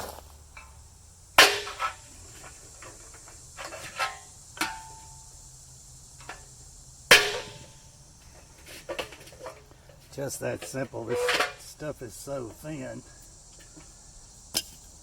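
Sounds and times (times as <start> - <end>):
loud metal knocks with ringing: 7.1 - 7.8.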